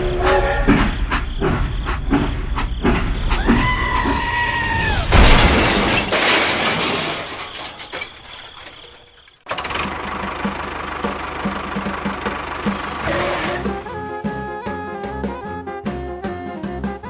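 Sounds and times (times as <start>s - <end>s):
crash: 4.8s - 9.6s.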